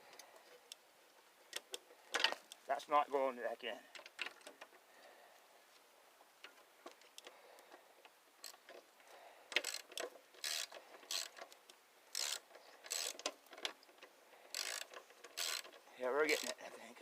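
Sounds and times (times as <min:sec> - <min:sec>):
ratchet wrench ratcheting: 0:09.6 - 0:11.4, 0:12.1 - 0:13.2, 0:14.5 - 0:16.6.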